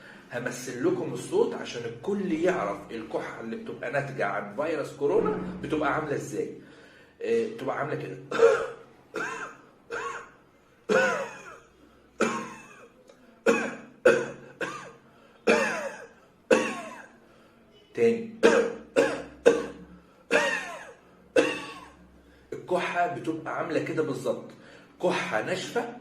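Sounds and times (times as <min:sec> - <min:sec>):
man coughing dryly: 0:08.3 - 0:17.2, 0:18.4 - 0:22.0.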